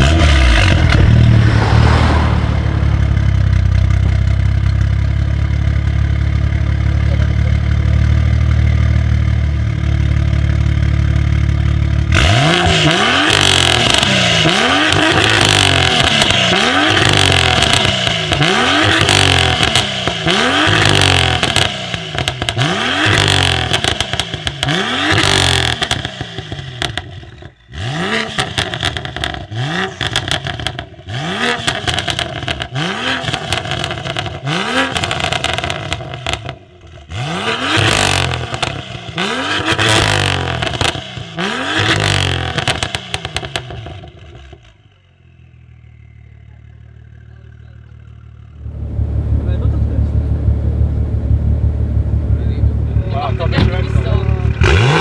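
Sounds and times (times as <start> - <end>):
car engine revving: 0.0 - 9.4, 11.9 - 27.1, 48.5 - 55.0
exhaust crackles and pops: 2.8 - 5.3, 14.8 - 27.5, 48.6 - 55.0.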